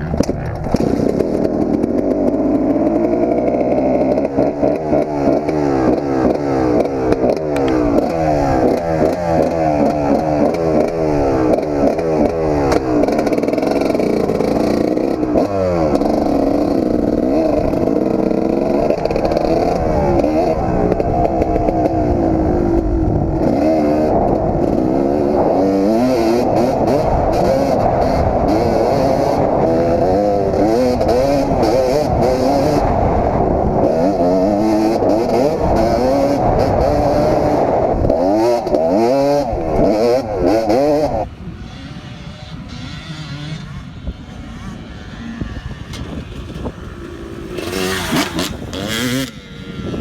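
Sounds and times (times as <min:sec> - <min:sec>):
motocross engine revving: 0:00.0 - 0:50.0.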